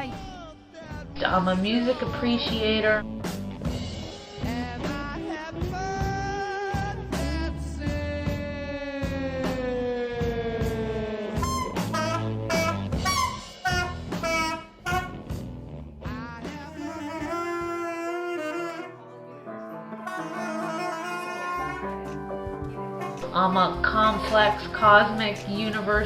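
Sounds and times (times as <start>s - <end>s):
jazzy music with horn lead: 11.4s - 15.6s, 16.5s - 19.2s, 19.9s - 26.0s.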